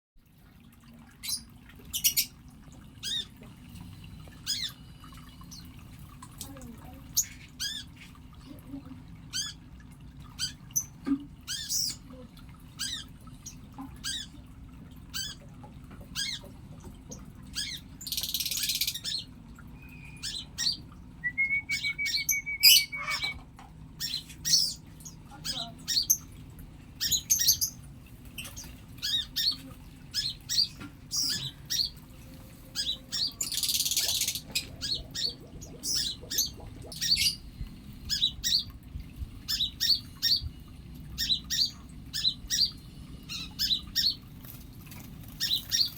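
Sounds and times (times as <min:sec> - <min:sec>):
birds chirping and squawking: 0:01.2 - 0:02.4, 0:03.0 - 0:03.4, 0:04.3 - 0:05.7, 0:07.1 - 0:08.1, 0:10.3 - 0:12.1, 0:12.7 - 0:14.4, 0:16.1 - 0:21.0, 0:21.7 - 0:23.4, 0:24.0 - 0:26.4, 0:27.0 - 0:32.0, 0:32.6 - 0:38.7, 0:39.4 - 0:40.5, 0:41.1 - 0:45.9
bird trill: 0:19.8 - 0:23.4.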